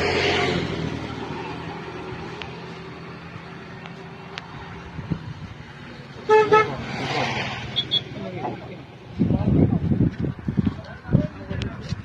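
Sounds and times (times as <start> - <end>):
horn beeps: 7.7 - 8.2.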